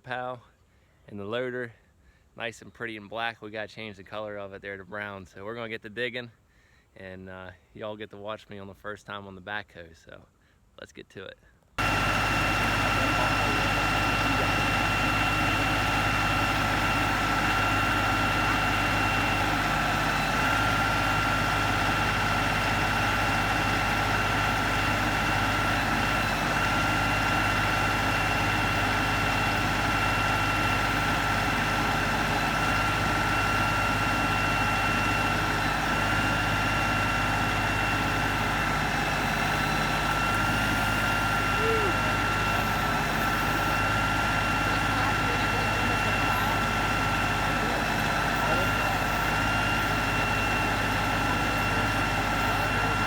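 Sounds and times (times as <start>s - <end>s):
steady high whine: 11.8s - 53.0s
tractor diesel engine running: 11.8s - 53.0s.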